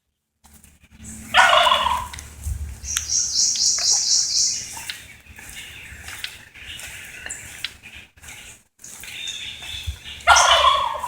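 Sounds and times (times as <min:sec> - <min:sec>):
high rapidly pulsing chirp: 0:01.0 - 0:06.8
turkey gobbling: 0:01.3 - 0:07.5, 0:09.7 - 0:11.0.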